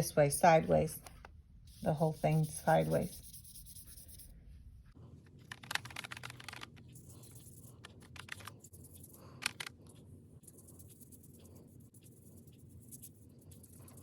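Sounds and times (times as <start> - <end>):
paintbrush stroking paper: 1.7 - 4.3, 5.5 - 14.0.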